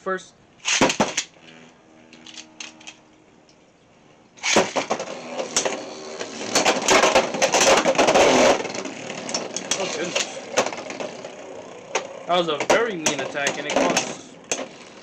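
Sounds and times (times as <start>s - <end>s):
spinning tops clashing: 0.6s - 3.0s, 4.4s - 15.0s
sharp clicks and clatters: 4.4s - 11.3s, 11.9s - 15.0s.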